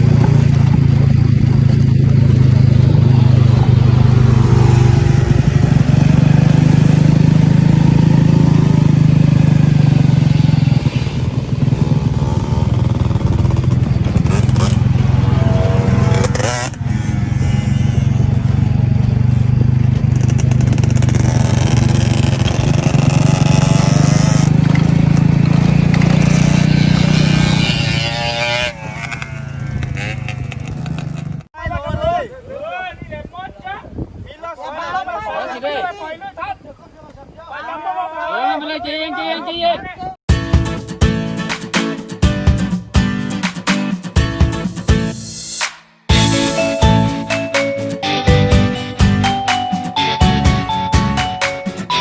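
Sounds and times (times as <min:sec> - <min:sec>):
dirt bike engine running: 0:00.0 - 0:31.5.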